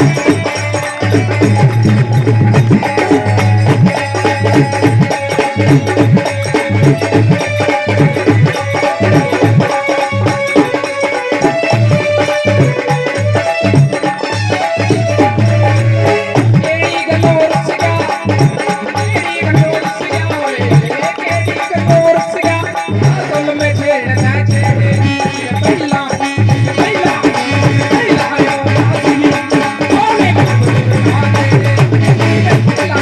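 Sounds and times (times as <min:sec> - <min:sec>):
wavering melody line: 0:00.0 - 0:16.7
fast percussion beat: 0:00.0 - 0:33.0.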